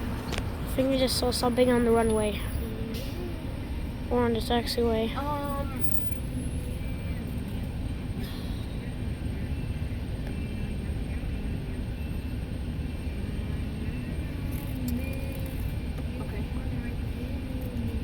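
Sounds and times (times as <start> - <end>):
low engine rumble: 0.0 - 18.0
faint clicks: 14.5 - 16.3.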